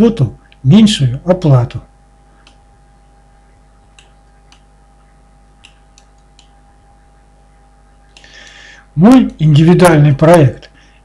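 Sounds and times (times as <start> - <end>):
low electrical hum: 0.0 - 11.0
faint clicks: 2.4 - 2.6, 3.9 - 4.7, 5.6 - 6.6.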